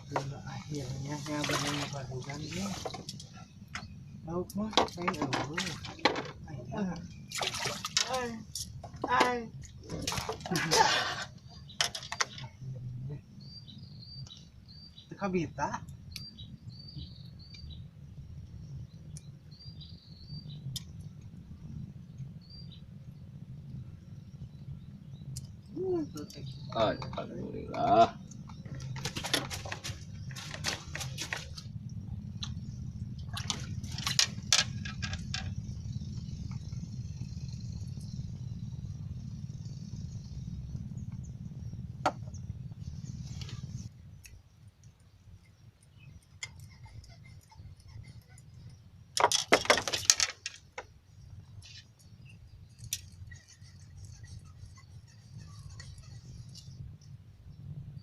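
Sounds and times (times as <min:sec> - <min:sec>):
steady low hum: 0:00.0 - 0:58.0
water splashing and dripping: 0:01.2 - 0:03.0, 0:07.3 - 0:10.9, 0:33.2 - 0:34.4.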